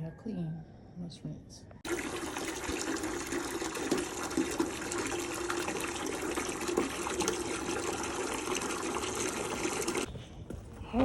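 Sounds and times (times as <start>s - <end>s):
water running into a bucket: 1.8s - 10.1s.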